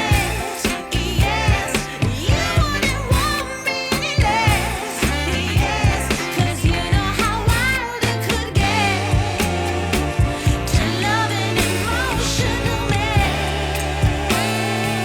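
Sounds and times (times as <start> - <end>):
pop music with woman singing: 0.0 - 15.0.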